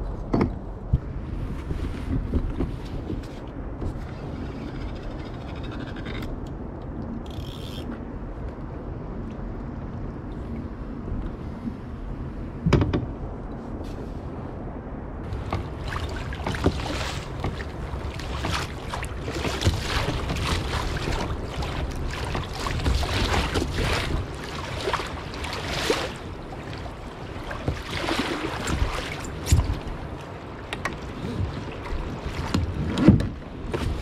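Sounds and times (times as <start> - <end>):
wind rumbling on microphone: 0.0 - 34.0
water splashing against kayak hull: 15.3 - 34.0.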